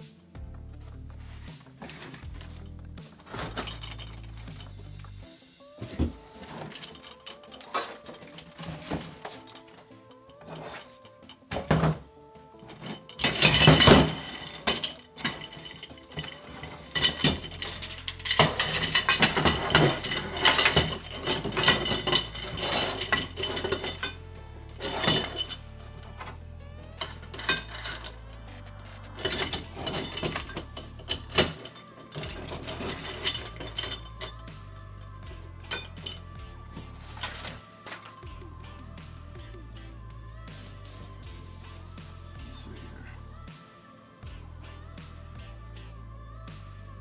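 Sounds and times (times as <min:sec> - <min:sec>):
metal parts clanking: 0:01.2 - 0:05.2, 0:05.8 - 0:38.4.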